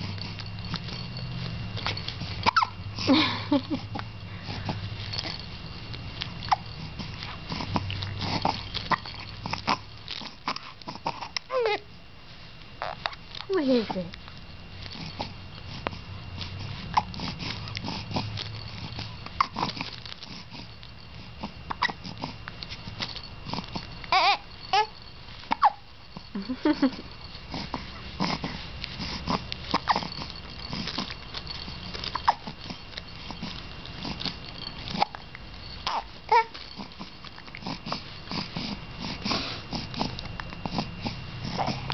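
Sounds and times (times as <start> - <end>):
baby breathing and mouth noises: 0.0 - 12.0, 12.8 - 41.9
baby hiccuping: 2.4 - 2.8, 35.9 - 36.5
baby breathing: 27.0 - 41.9.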